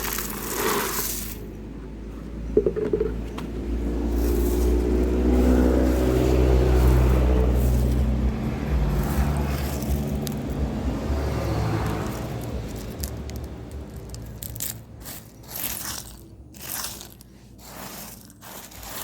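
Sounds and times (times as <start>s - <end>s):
loud mechanical flywheel hum: 3.8s - 14.6s.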